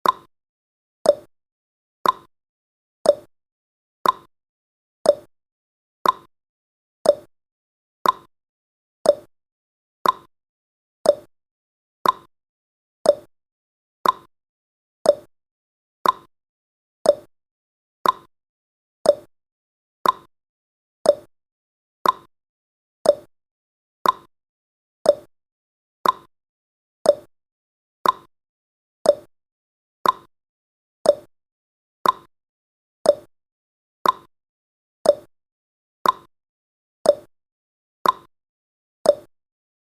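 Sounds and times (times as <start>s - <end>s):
countdown timer tick-tock clicks: 0.0s - 0.3s, 1.0s - 1.3s, 2.0s - 2.3s, 3.0s - 3.3s, 4.0s - 4.3s, 5.0s - 5.3s, 6.0s - 6.3s, 7.0s - 7.3s, 8.0s - 8.3s, 9.0s - 9.4s, 10.0s - 10.3s, 11.0s - 11.3s, 12.0s - 12.3s, 13.0s - 13.3s, 14.0s - 14.3s, 15.0s - 15.4s, 16.0s - 16.3s, 17.0s - 17.3s, 18.0s - 18.3s, 19.0s - 19.3s, 20.0s - 20.3s, 21.0s - 21.4s, 22.0s - 22.3s, 23.0s - 23.3s, 24.0s - 24.3s, 25.0s - 25.4s, 26.0s - 26.4s, 27.0s - 27.4s, 28.0s - 28.4s, 29.0s - 29.4s, 30.0s - 30.4s, 31.0s - 31.4s, 32.0s - 32.4s, 33.0s - 33.4s, 34.0s - 34.4s, 35.0s - 35.4s, 36.0s - 36.4s, 37.0s - 37.4s, 38.0s - 38.4s, 39.0s - 39.4s.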